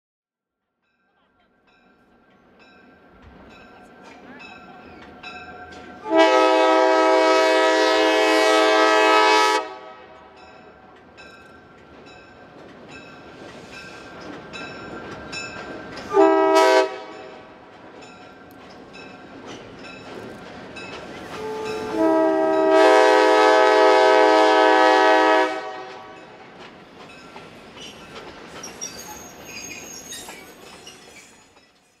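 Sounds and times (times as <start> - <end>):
freight train rumble and wheel clatter: 1.2 - 32.0
locomotive air horn blasts: 6.0 - 10.4, 16.1 - 17.4, 21.4 - 26.3.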